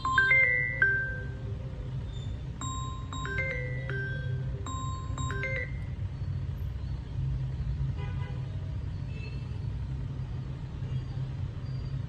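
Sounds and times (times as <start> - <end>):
chiming jingle: 0.0 - 1.4, 2.6 - 6.0.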